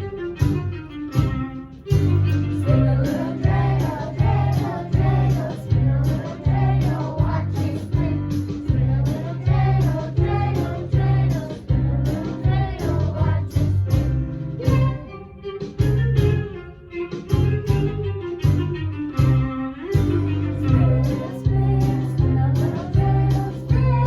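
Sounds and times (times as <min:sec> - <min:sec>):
instrumental accompaniment with beat: 0:00.0 - 0:24.0
children singing: 0:02.6 - 0:13.8, 0:20.6 - 0:24.0.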